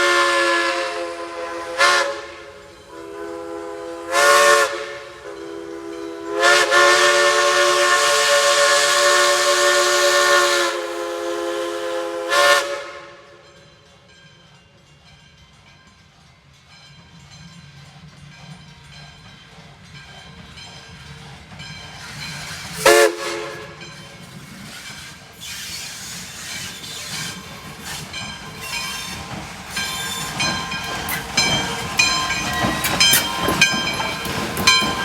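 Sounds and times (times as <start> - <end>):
steam locomotive whistle: 0.0 - 13.5, 22.4 - 24.1, 24.7 - 35.0
steam hissing: 21.9 - 35.0.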